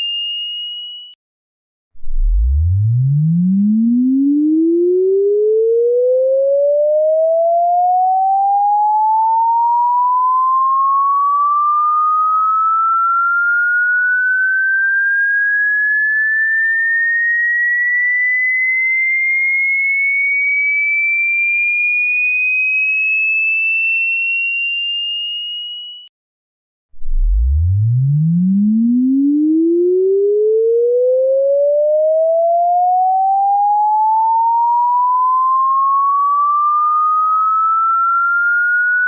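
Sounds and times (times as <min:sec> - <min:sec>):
rising sine-wave tone: 0:02.0 - 0:17.1, 0:27.0 - 0:39.0.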